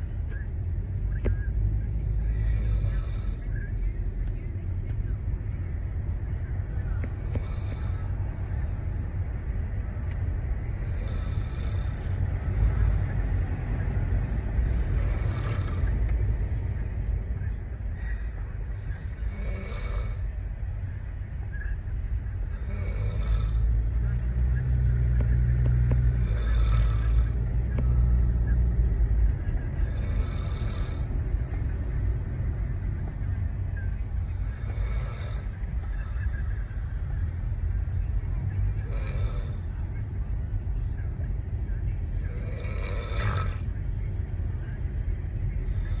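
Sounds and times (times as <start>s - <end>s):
steady low rumble: 0.0s - 46.0s
person snoring: 2.0s - 3.5s, 7.0s - 8.1s, 10.6s - 13.0s, 14.6s - 16.0s, 18.0s - 20.3s, 22.5s - 23.8s, 25.9s - 28.2s, 29.8s - 31.1s, 34.4s - 36.3s, 38.7s - 39.7s, 42.2s - 43.7s.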